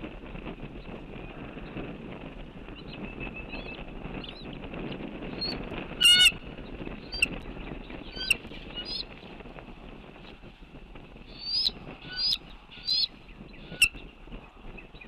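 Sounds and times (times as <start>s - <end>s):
bird calls: 7.0s - 9.1s, 11.3s - 14.2s.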